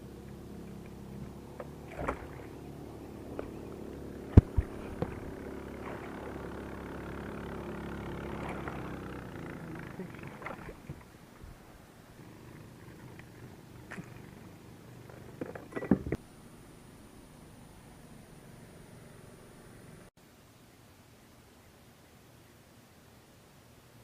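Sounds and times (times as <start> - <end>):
motor humming: 0.0 - 11.1.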